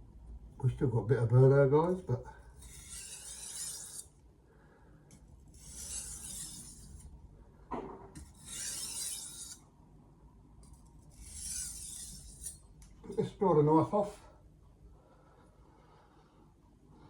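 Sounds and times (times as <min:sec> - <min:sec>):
knife sliding on sharpening stone: 0:02.6 - 0:04.1, 0:05.5 - 0:07.1, 0:08.2 - 0:09.6, 0:10.6 - 0:12.7.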